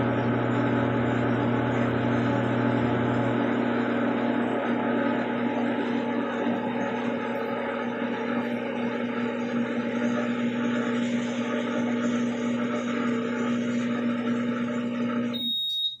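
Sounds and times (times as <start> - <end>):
drain pump buzzing hum: 0.0 - 16.0.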